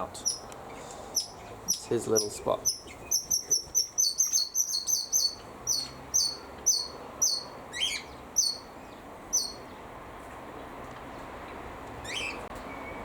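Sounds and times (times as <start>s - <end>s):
bird chirping high notes: 0.2s - 0.5s, 1.1s - 9.7s
rising and falling bird call: 0.2s - 9.8s, 12.0s - 13.0s.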